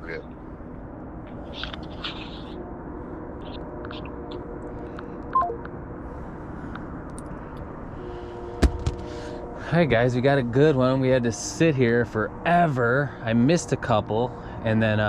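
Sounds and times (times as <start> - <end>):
steady hum: 0.0 - 15.0
phone three-tone beep: 5.4 - 5.6.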